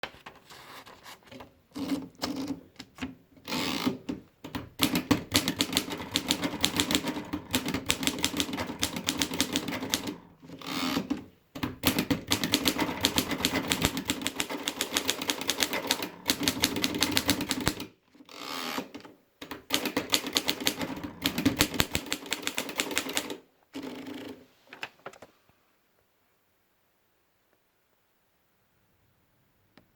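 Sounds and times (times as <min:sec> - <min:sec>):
manual typewriter typing: 0:03.7 - 0:18.0, 0:18.8 - 0:24.3.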